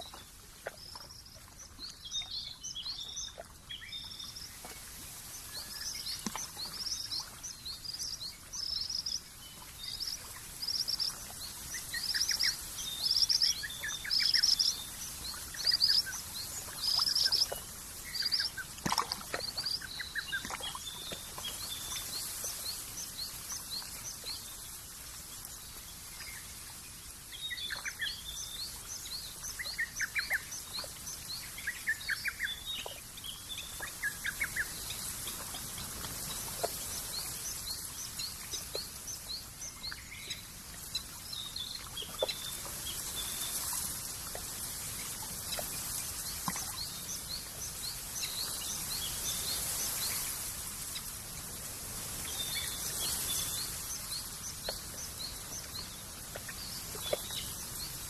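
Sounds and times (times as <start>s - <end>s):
small birds chirping and trilling: 0.0s - 24.7s
countryside ambient hiss: 0.0s - 58.0s.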